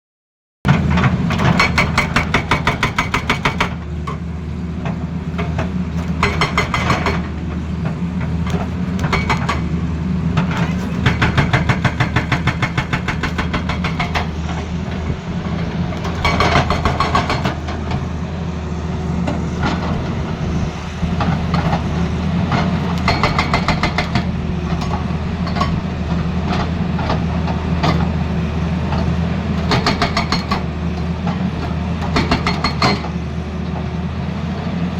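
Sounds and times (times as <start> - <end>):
diesel engine running: 0.7 - 34.9
hydraulic breaker hammering: 0.8 - 4.2, 5.5 - 7.4, 8.4 - 9.8, 10.4 - 18.1, 19.3 - 28.3, 28.9 - 33.2.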